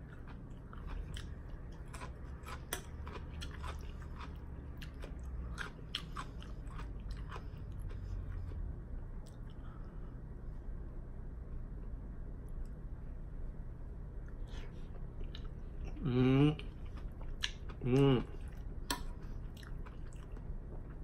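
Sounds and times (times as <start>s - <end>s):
chewing crunchy cucumber: 0.0s - 9.6s, 14.9s - 21.0s.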